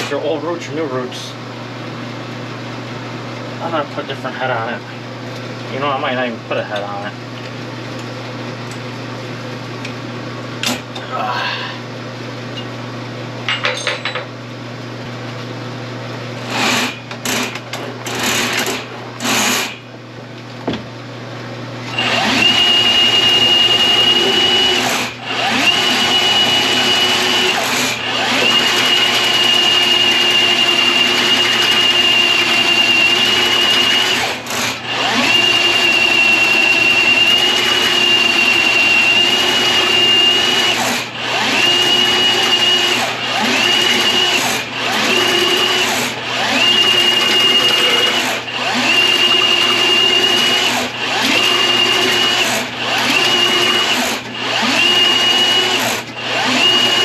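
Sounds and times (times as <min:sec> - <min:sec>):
drain machine motor whining: 0:21.8 - 0:57.0.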